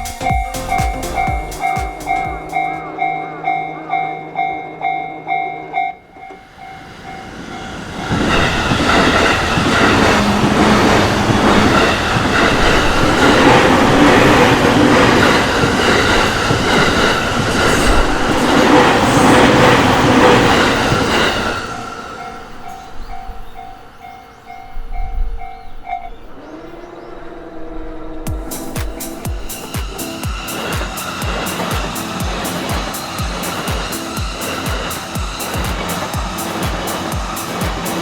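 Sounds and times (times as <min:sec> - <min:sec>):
train wheels on rails: 0:00.0 - 0:03.1, 0:06.0 - 0:26.2, 0:28.3 - 0:38.0
level crossing bell ringing: 0:00.0 - 0:07.3.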